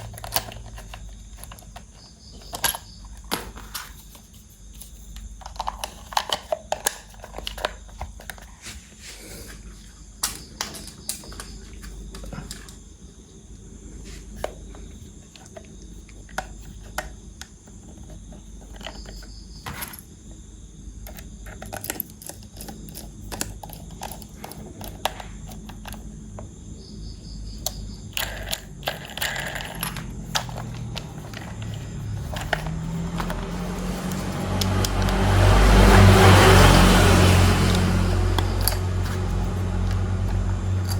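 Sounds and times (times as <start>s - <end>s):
plastic toy parts clicking: 0.0s - 4.2s, 4.8s - 8.4s, 21.0s - 26.1s, 27.6s - 35.2s, 37.7s - 40.9s.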